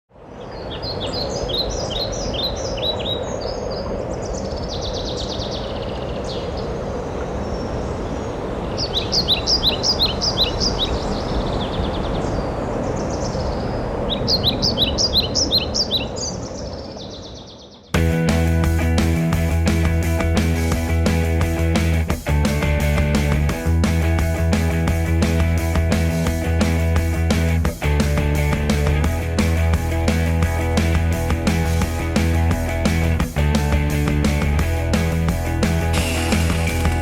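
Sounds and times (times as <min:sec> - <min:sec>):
noisy outdoor background: 0:00.1 - 0:37.0
songbird chirping: 0:00.2 - 0:24.1
rock music with guitar: 0:18.0 - 0:37.0.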